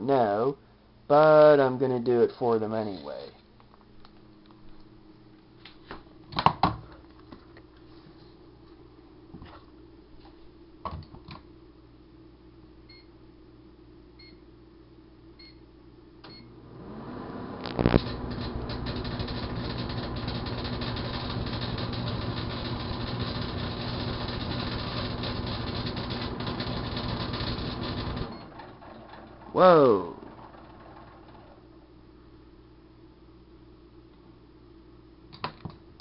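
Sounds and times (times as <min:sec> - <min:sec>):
microwave humming: 0:10.7 - 0:36.0
foil arcing crackling and snapping: 0:17.7 - 0:28.2.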